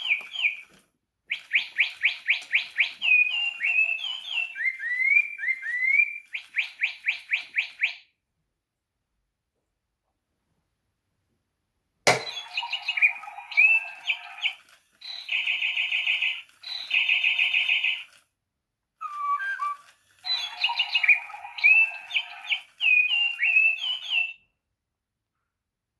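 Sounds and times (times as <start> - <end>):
toy bird recorded birdsong: 0.0 - 8.1, 12.1 - 18.2, 19.0 - 24.6
sharp click: 12.1 - 12.4.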